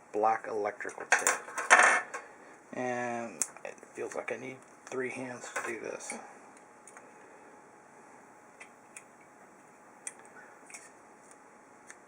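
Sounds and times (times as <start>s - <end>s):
clicks and rustles of electrical tape: 10.0s - 12.0s.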